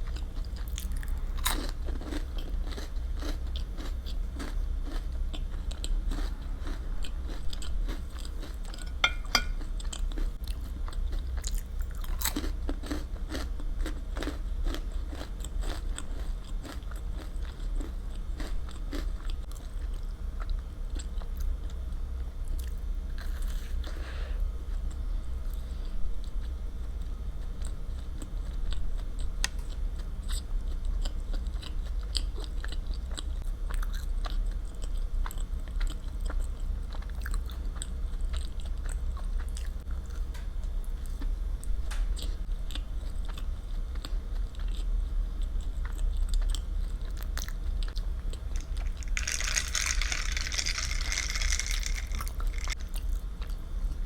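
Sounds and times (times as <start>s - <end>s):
chewing and biting: 0.0s - 21.5s, 45.6s - 53.6s
low hum: 4.2s - 10.5s, 47.2s - 54.0s.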